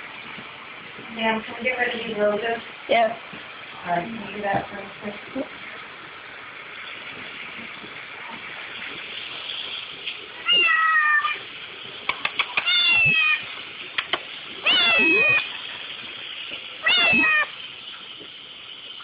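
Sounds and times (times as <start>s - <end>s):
kitten meowing: 10.5s - 11.4s, 12.5s - 13.4s, 14.6s - 15.5s, 16.8s - 17.5s
sharp clicks: 12.1s - 12.7s, 14.0s - 14.3s.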